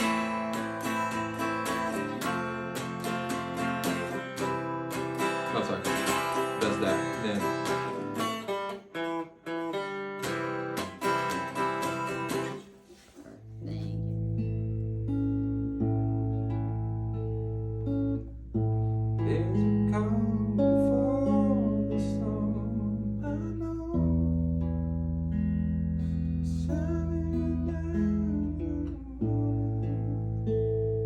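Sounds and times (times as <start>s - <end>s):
acoustic guitar strumming: 0.0s - 31.0s
person singing: 19.2s - 24.3s, 26.6s - 30.5s.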